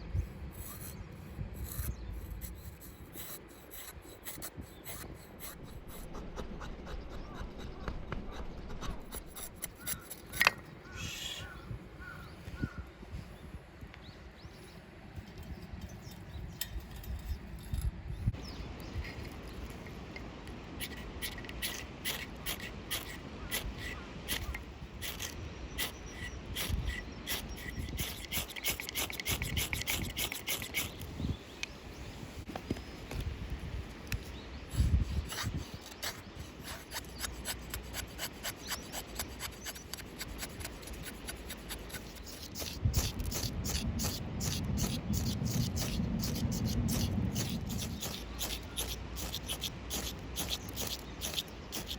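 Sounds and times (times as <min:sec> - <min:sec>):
rhythmic scraping strokes: 0:20.8 - 0:31.0, 0:34.8 - 0:51.9.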